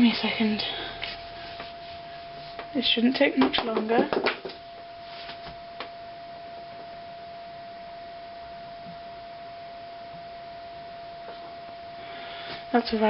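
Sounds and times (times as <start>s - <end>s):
steady tone: 0.0s - 13.0s.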